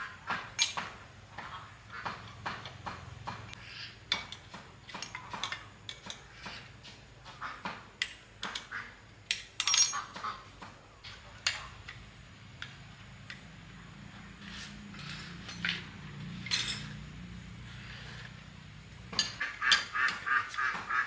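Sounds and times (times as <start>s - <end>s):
metal parts clinking: 0.6s - 0.8s, 9.3s - 10.4s, 14.4s - 18.4s, 19.0s - 20.3s
metallic clatter: 9.3s - 10.4s, 14.4s - 20.4s.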